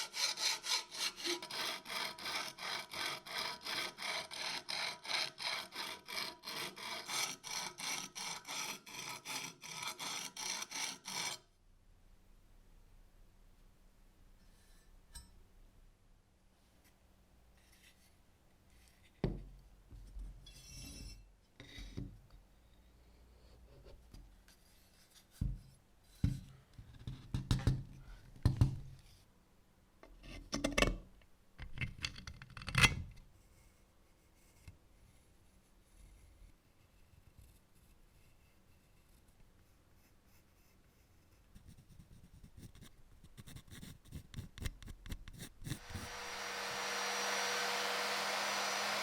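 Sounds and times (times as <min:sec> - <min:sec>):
tools scraping and rubbing: 0:00.0 - 0:11.4, 0:45.3 - 0:49.0.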